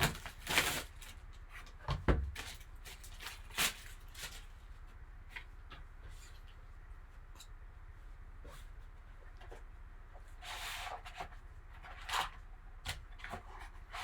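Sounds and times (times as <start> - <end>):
packaging rustling: 0.0 - 1.2.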